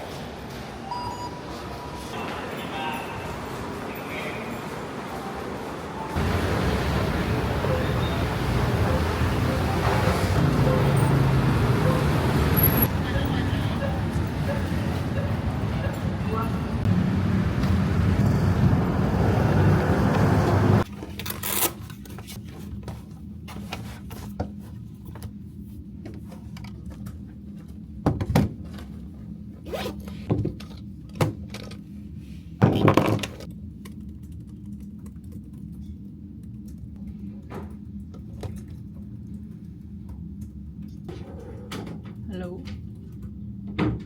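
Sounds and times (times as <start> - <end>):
vehicle running noise: 1.8 - 20.9.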